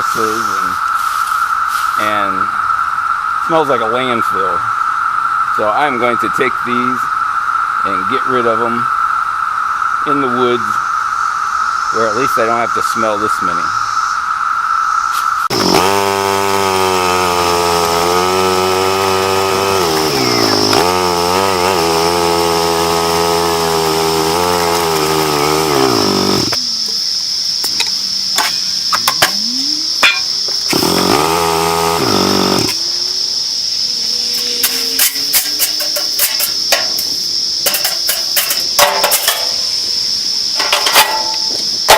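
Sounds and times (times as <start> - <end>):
cicada chorus: 0.0 - 41.9
atv engine running: 15.5 - 37.0.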